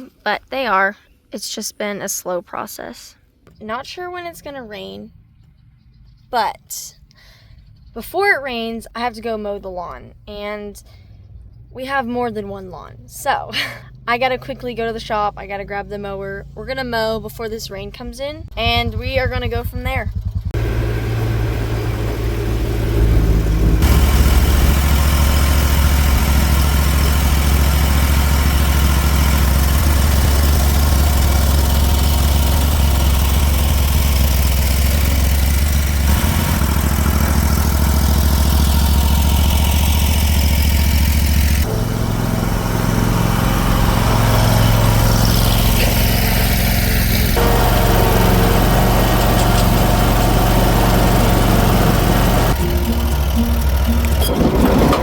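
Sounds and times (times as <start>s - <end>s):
lawn mower engine running: 18.4s - 55.0s.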